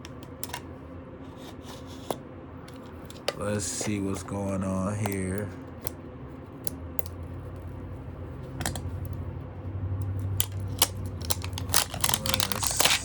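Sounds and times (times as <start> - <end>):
plastic packaging crinkling: 10.4 - 13.0.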